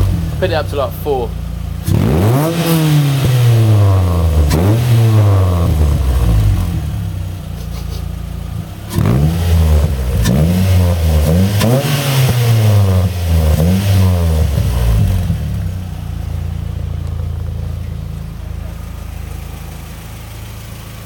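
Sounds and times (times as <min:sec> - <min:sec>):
car engine idling: 0:00.0 - 0:21.0
car engine revving: 0:00.0 - 0:21.0.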